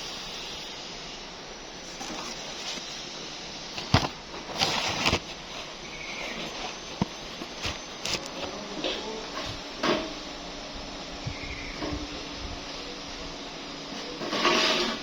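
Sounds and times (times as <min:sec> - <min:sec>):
steady hiss: 0:00.0 - 0:15.0
handling noises: 0:01.6 - 0:10.5.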